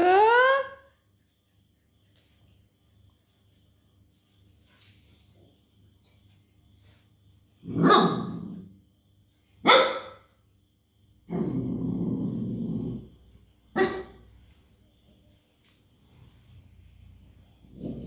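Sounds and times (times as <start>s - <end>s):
dog barking: 7.7s - 8.5s, 9.6s - 10.3s, 13.7s - 14.3s.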